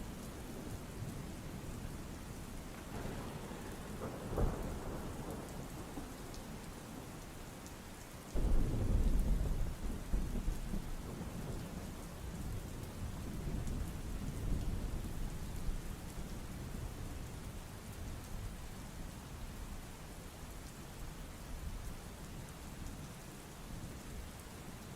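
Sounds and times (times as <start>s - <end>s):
rain falling: 0.0s - 24.9s
thunder rumbling: 2.7s - 6.2s.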